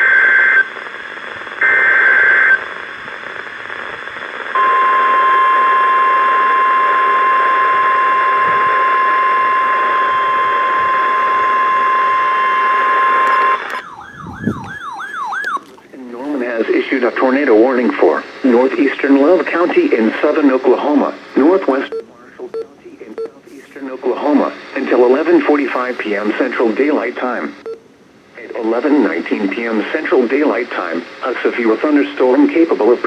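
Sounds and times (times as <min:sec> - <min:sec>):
radio static hiss: 0:00.0 - 0:13.8, 0:15.7 - 0:33.0
steady warning alarm tone: 0:04.6 - 0:15.7
warbling siren-like tone: 0:13.7 - 0:15.7.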